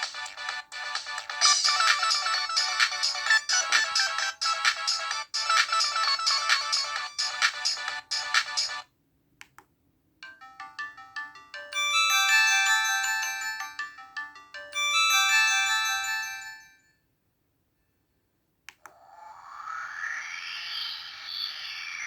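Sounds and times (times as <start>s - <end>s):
polyphonic ringtone melody: 0.0s - 8.8s, 10.2s - 16.8s
synth ringtone: 0.0s - 8.8s, 10.2s - 16.8s.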